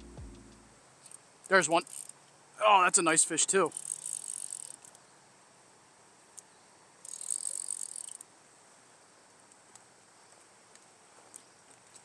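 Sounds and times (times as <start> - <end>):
faint steady hiss: 0.0 - 12.0
fly reel ratchet buzzing: 1.8 - 2.2, 3.6 - 5.0, 7.0 - 8.2.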